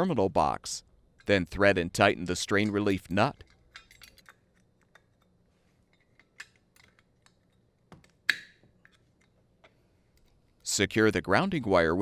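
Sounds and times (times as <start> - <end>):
small metal parts clicking: 2.5 - 5.3.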